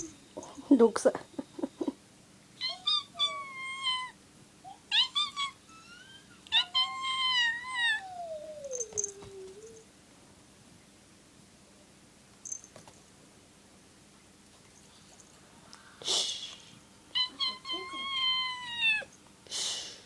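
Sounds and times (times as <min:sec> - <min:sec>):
cat yelping cries: 0:02.6 - 0:09.8, 0:17.2 - 0:19.1.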